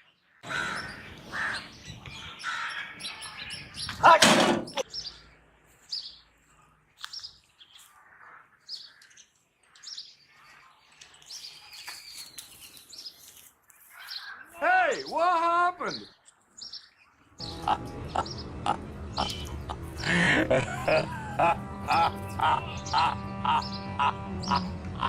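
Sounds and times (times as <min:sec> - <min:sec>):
birds chirping: 0:00.0 - 0:25.0.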